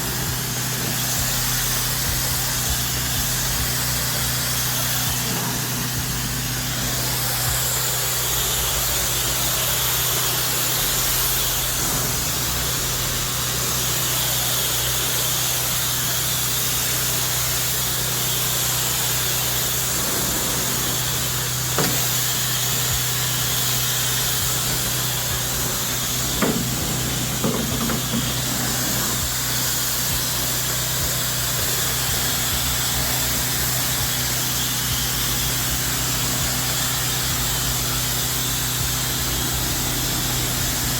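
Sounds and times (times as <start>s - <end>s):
pressure washer spraying: 0.0s - 40.9s.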